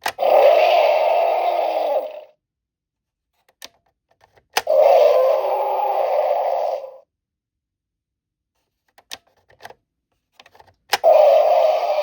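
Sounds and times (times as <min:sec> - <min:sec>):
electronic toy roar: 0:00.1 - 0:02.4, 0:04.6 - 0:07.1, 0:11.0 - 0:12.0.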